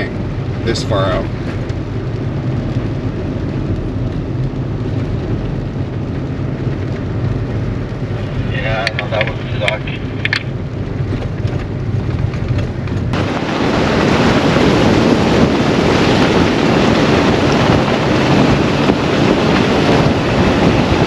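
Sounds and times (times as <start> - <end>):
vehicle engine hum: 0.0 - 21.0
wind noise on microphone: 0.0 - 21.0.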